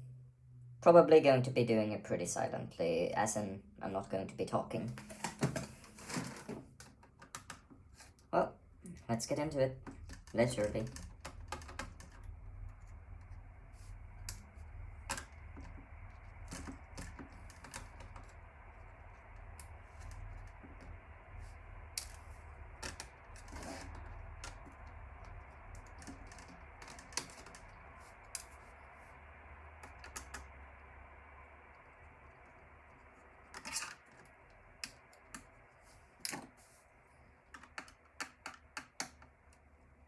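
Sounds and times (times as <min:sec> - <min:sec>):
low steady hum: 0:00.0 - 0:40.0
screwdriver clicks on computer parts: 0:22.0 - 0:28.6, 0:29.8 - 0:30.5, 0:37.5 - 0:39.3.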